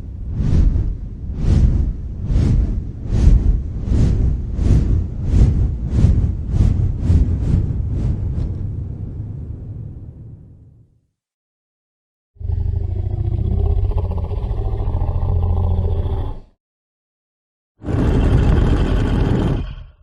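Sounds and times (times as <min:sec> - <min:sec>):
dragon roar: 0:12.4 - 0:16.5, 0:17.8 - 0:20.0.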